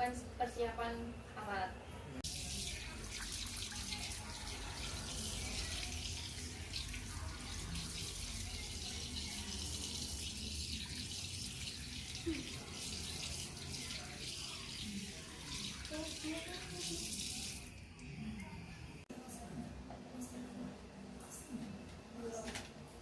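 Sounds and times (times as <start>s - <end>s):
tap water running into sink: 2.2s - 17.8s.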